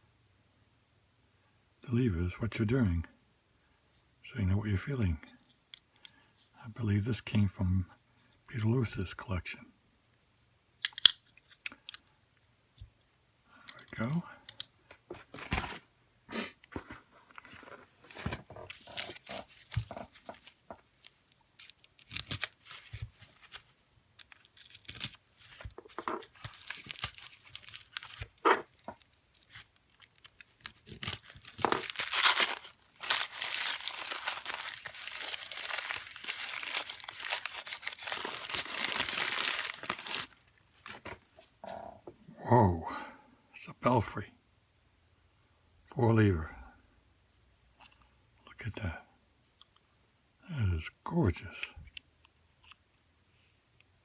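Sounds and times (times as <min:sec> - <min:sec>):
packing material crinkling: 0:17.4 - 0:41.1
wrap crumpling and tearing: 0:18.1 - 0:20.6, 0:21.6 - 0:41.0.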